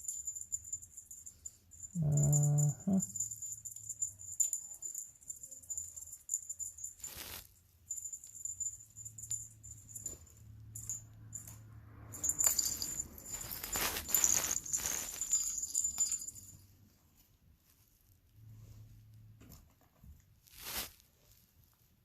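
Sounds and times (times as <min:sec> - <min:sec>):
small jingle bell rattling: 0:00.0 - 0:16.9.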